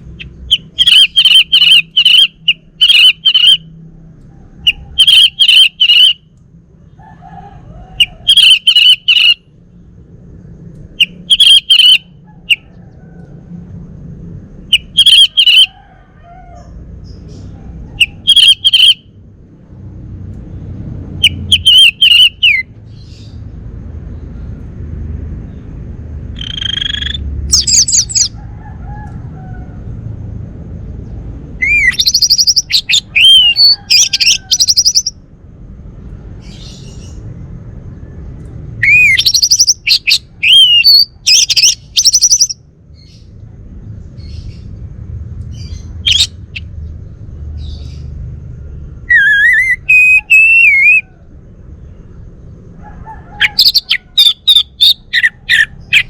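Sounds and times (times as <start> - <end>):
rising bird call: 0.3 - 3.7, 4.4 - 6.2, 7.2 - 9.4, 11.0 - 12.8, 14.7 - 17.2, 18.0 - 19.0, 21.2 - 22.8, 26.3 - 29.8, 31.6 - 35.2, 38.8 - 43.2, 49.0 - 51.3.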